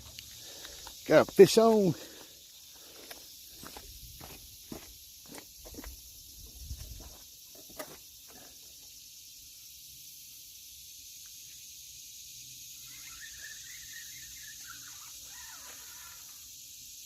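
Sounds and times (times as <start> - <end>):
steady high hiss: 0.0 - 17.0
faint squeaky chirps: 11.3 - 16.9.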